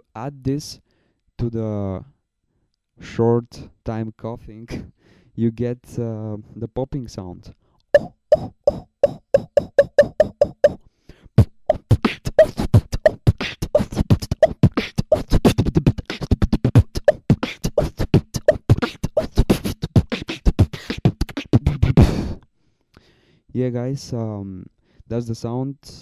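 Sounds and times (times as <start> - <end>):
beatbox vocal pops: 8.0 - 10.8, 11.4 - 22.4
fast beatbox pattern: 8.0 - 22.4.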